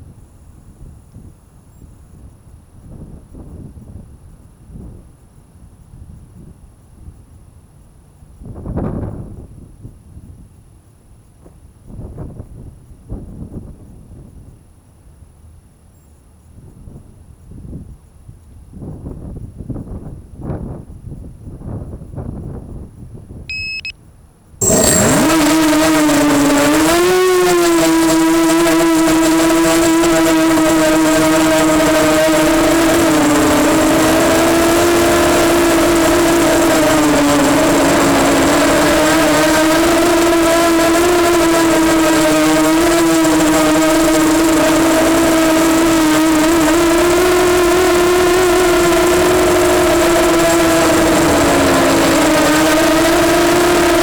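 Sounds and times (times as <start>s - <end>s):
quadcopter motors whining: 23.5s - 23.9s, 24.6s - 54.0s
short beep: 23.5s - 23.9s, 24.6s - 25.9s.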